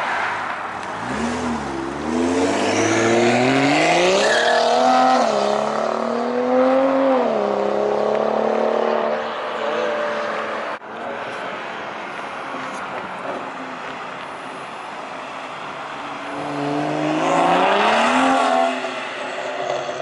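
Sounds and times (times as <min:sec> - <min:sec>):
car engine accelerating hard: 0:00.8 - 0:10.8.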